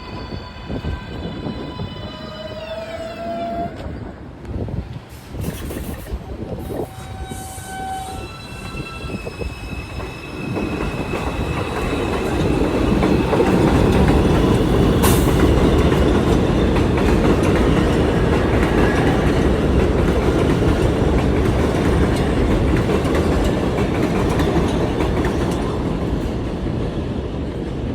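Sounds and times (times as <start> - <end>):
subway train wheels rumbling: 0.0 - 27.9
faint high wheel squeal: 6.7 - 11.2.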